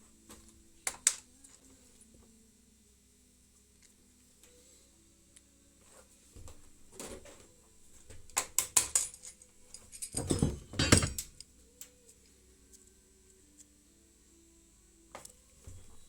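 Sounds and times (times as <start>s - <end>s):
metal tools clinking: 8.8s - 11.5s.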